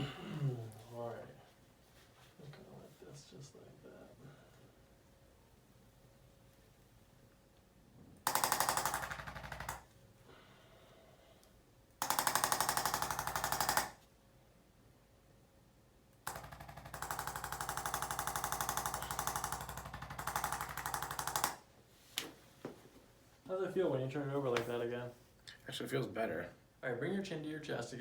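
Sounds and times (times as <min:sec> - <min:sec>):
electric massager hammering rapidly: 0:08.2 - 0:10.0, 0:12.0 - 0:14.0, 0:16.2 - 0:21.7.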